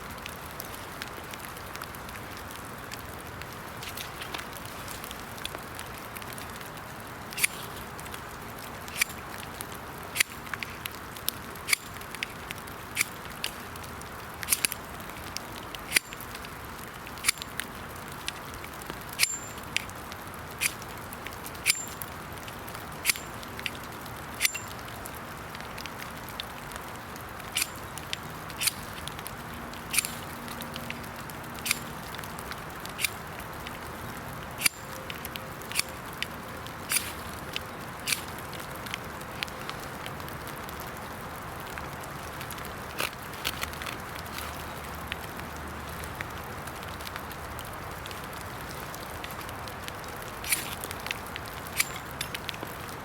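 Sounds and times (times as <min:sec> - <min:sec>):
rain hiss: 0:00.0 - 0:53.0
knife striking flint clicks: 0:14.4 - 0:16.5, 0:21.6 - 0:22.1, 0:27.5 - 0:29.1, 0:29.9 - 0:32.0, 0:36.9 - 0:38.4, 0:50.4 - 0:52.4.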